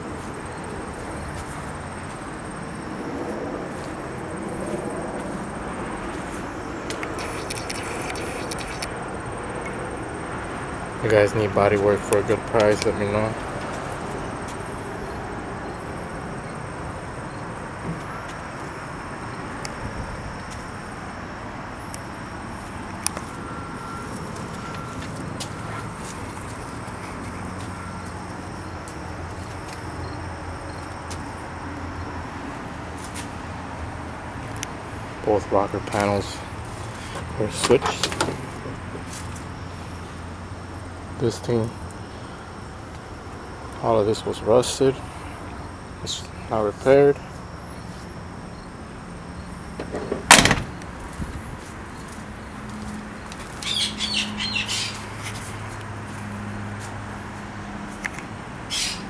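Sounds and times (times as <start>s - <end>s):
low outdoor hum: 0.0s - 59.0s
sharp click: 6.9s - 8.9s
vehicle door slamming: 49.8s - 50.9s.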